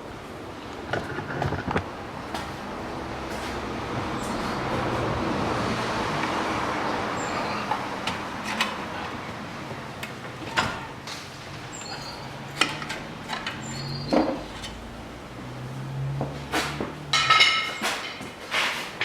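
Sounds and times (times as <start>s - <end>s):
short high squeaks: 13.6s - 14.2s
metallic knocks and clanks: 16.1s - 19.0s.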